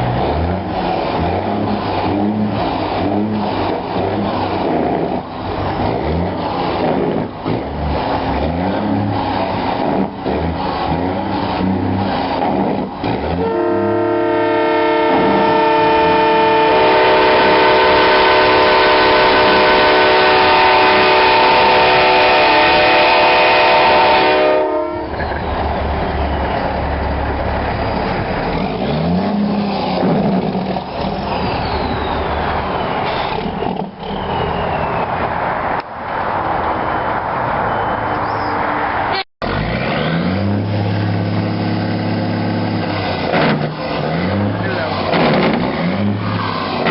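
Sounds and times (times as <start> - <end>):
engine rumble: 0.0 - 16.6, 24.8 - 46.9
traffic noise: 0.0 - 46.9
train horn multi-note chord: 13.3 - 25.1.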